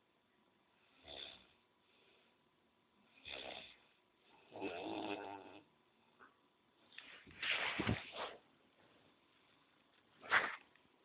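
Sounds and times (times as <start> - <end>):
man snoring loudly: 1.0 - 1.4, 3.2 - 3.8, 4.5 - 5.6.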